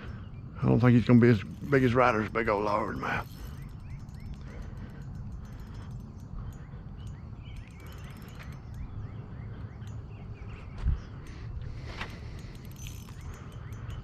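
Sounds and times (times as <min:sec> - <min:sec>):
faint chirping calls: 0:00.0 - 0:14.0
steady low rumble: 0:00.0 - 0:14.0.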